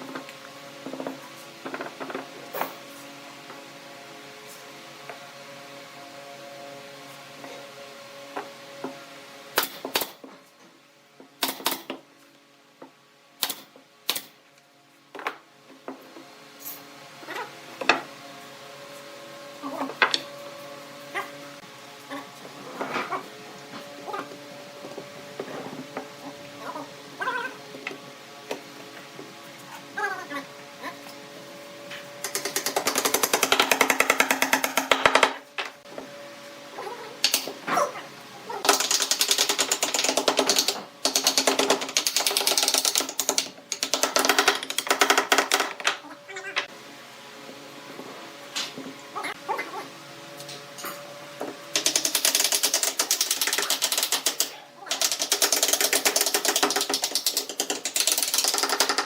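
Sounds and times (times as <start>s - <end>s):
fast mechanical taps: 32.2s - 35.4s, 38.6s - 45.9s, 51.8s - 59.0s.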